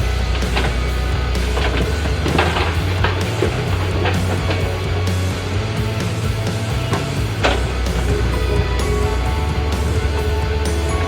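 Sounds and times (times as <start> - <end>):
loud rock music: 0.0 - 11.0.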